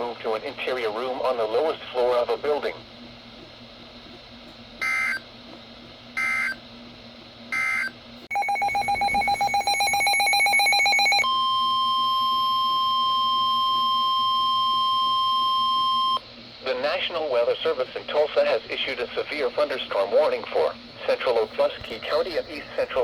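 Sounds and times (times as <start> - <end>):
steady warning alarm tone: 4.8 - 5.3, 6.2 - 6.6, 7.5 - 16.2.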